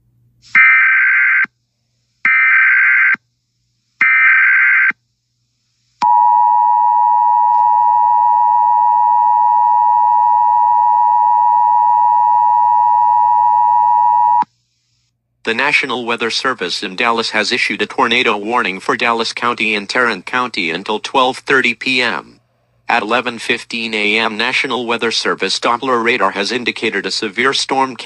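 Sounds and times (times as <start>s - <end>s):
shrill two-tone attention signal: 6.0s - 14.4s.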